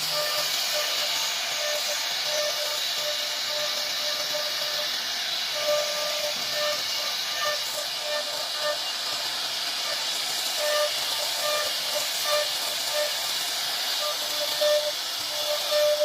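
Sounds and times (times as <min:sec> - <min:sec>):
short machine tones: 0:00.0 - 0:09.0, 0:10.6 - 0:13.3, 0:14.0 - 0:16.0
router spindle hiss: 0:00.0 - 0:16.0.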